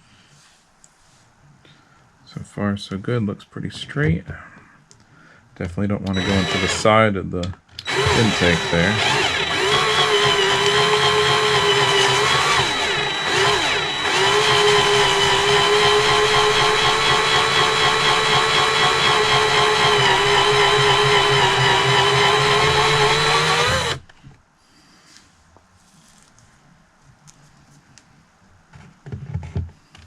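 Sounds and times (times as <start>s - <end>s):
power drill cutting pipe: 6.1s - 7.0s, 7.8s - 24.1s.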